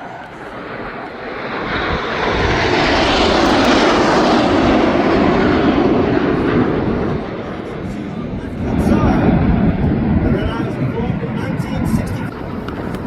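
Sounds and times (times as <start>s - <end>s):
jets flying past: 0.0s - 13.0s.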